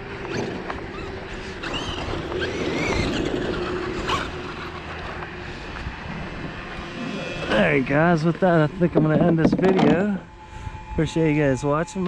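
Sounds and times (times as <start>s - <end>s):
rc truck motor whining: 0.0s - 5.9s
steady rushing noise: 1.2s - 12.0s.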